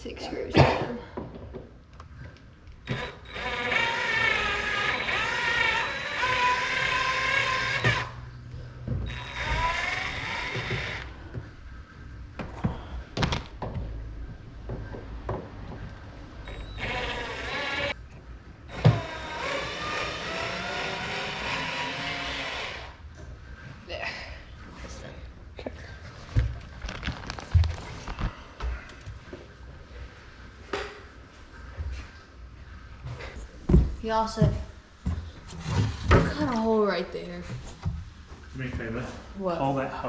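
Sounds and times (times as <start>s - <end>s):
cordless drill motor whining: 2.8s - 8.2s, 9.0s - 11.2s, 16.4s - 18.0s, 18.7s - 23.0s
drill clicks: 2.8s - 8.2s, 9.1s - 11.1s, 16.5s - 18.0s.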